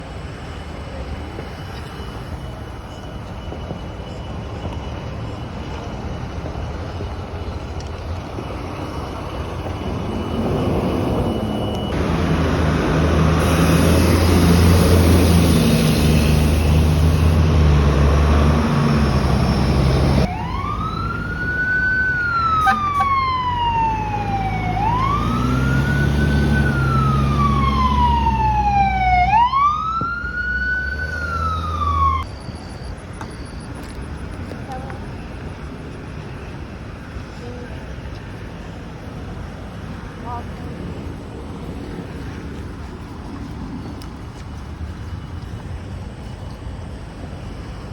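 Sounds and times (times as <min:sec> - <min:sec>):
heavy engine running: 0:00.0 - 0:47.9
siren wailing: 0:01.9 - 0:33.9.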